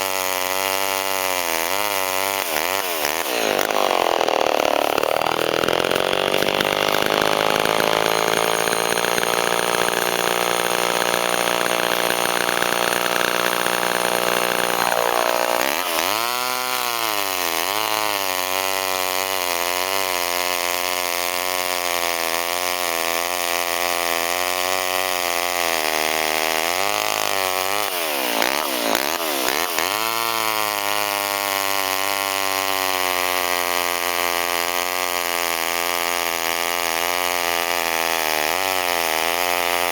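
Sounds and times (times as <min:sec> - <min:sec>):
two-stroke chainsaw running hard: 0:00.0 - 0:39.9.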